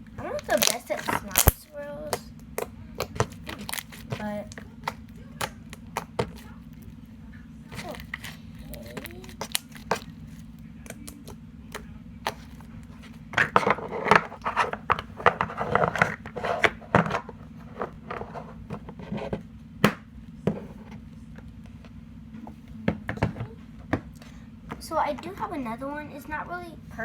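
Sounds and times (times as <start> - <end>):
steady low hum: 0.0 - 27.0
slime squishing with sticky clicks: 0.3 - 7.0, 7.7 - 12.6.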